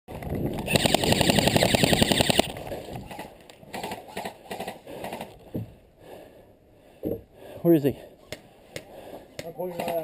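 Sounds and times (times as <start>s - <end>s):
airsoft rifle full-auto burst: 0.7s - 2.5s.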